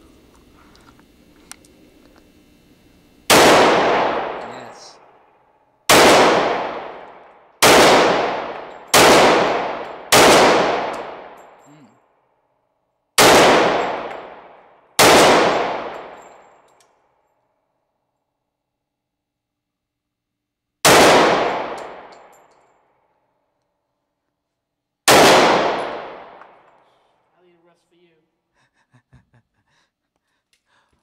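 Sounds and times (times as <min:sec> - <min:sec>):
pistol shots: 0:03.3 - 0:04.8, 0:05.9 - 0:11.6, 0:13.2 - 0:16.4, 0:20.8 - 0:22.4, 0:25.0 - 0:26.8.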